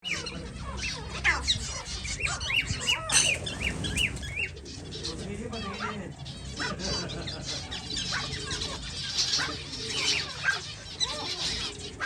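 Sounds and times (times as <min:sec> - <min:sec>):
finches chirping: 0:00.0 - 0:12.0.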